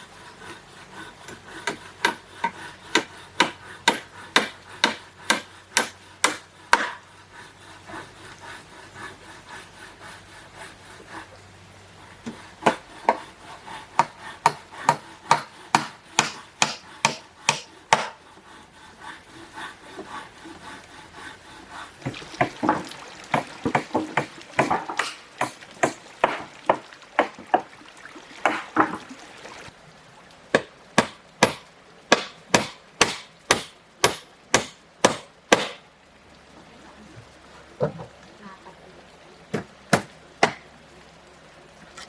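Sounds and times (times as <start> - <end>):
chopping blows on wood: 30.6 - 35.8.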